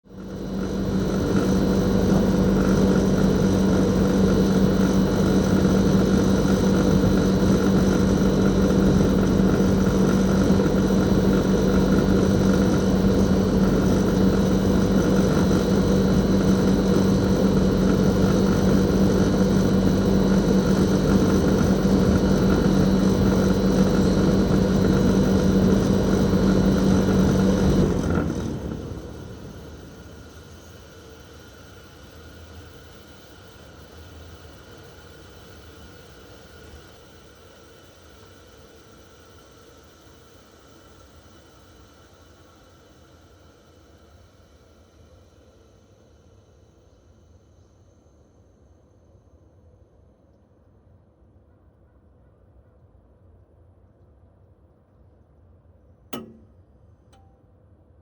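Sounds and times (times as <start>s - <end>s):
air conditioner unit humming: 0.1s - 35.7s.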